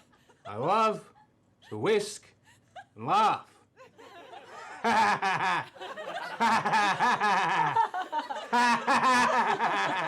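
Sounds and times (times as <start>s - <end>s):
person laughing: 8.5s - 10.0s.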